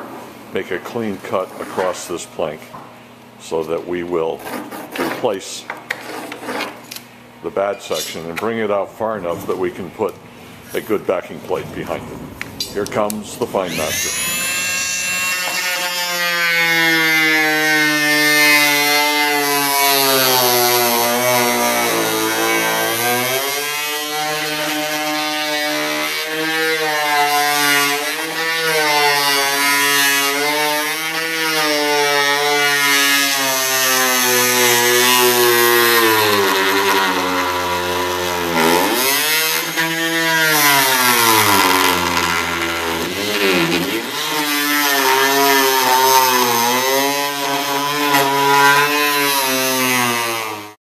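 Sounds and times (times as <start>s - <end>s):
oscillating tool cutting wood: 13.0s - 50.8s.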